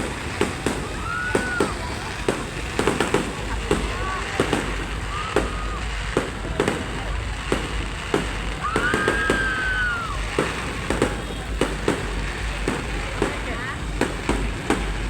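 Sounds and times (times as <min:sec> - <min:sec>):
firework whistling: 0:00.0 - 0:15.0
fireworks bursting bangs: 0:00.0 - 0:15.0.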